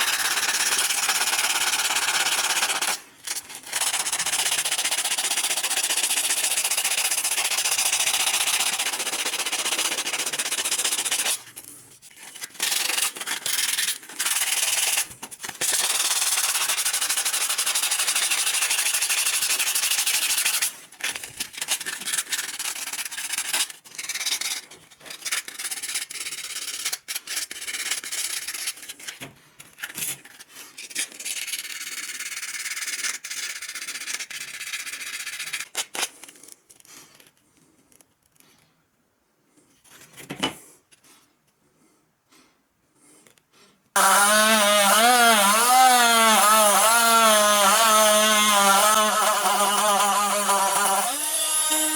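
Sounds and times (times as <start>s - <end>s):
abrasive sanding: 44.0s - 51.9s.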